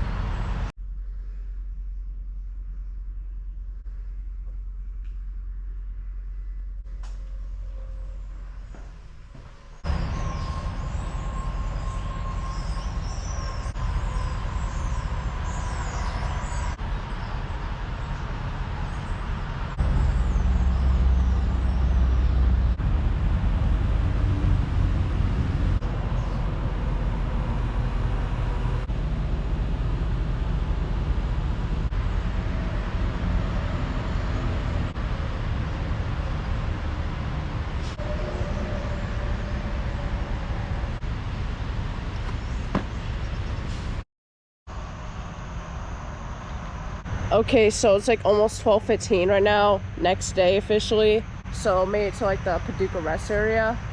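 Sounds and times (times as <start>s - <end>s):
car driving on highway: 9.8s - 44.0s.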